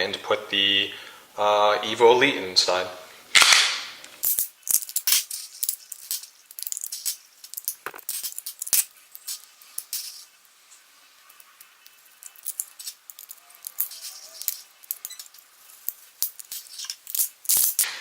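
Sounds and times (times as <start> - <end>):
gun parts rattling: 3.4 - 10.4, 11.3 - 17.9.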